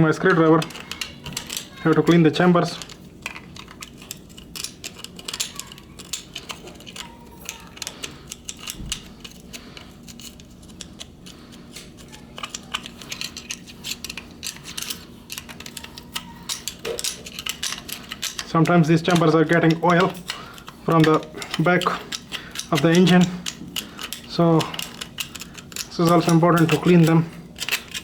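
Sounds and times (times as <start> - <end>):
screwdriver scraping and clicking metal: 0.1 - 28.0.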